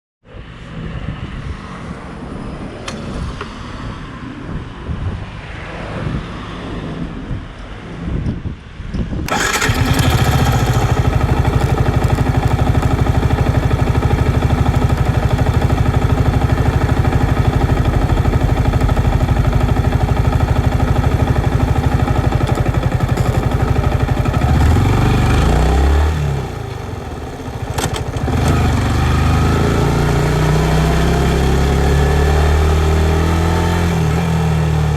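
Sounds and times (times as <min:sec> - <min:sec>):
motorcycle engine idling: 0:09.3 - 0:30.2.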